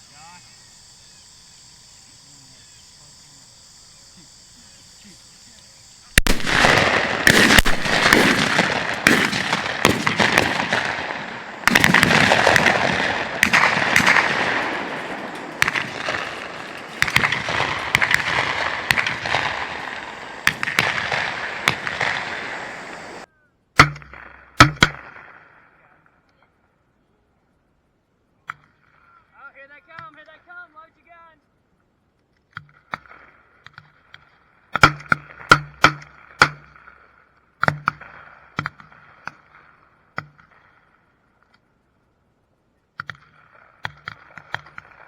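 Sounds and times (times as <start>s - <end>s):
shotgun fire with echoes: 6.2s - 25.7s.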